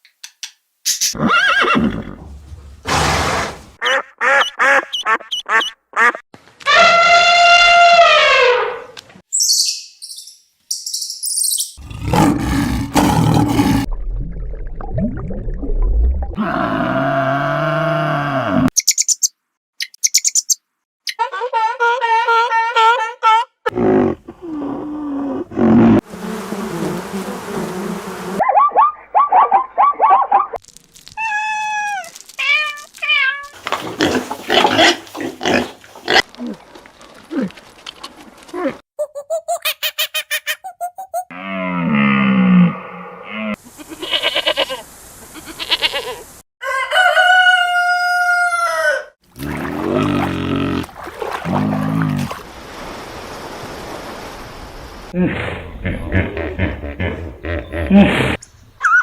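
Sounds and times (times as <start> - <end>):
high bird chirps: 9.3 - 11.8, 18.8 - 21.2
pigs squealing: 33.6 - 36.3
pigs grunting: 33.6 - 36.6, 49.4 - 52.4, 55.2 - 58.4.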